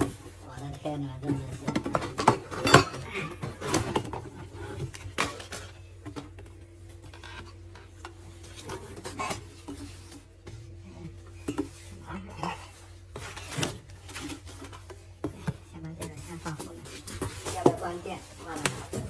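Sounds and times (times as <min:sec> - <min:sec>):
steady low hum: 0:00.0 - 0:19.0
clinks and knocks of hard objects: 0:01.2 - 0:06.4.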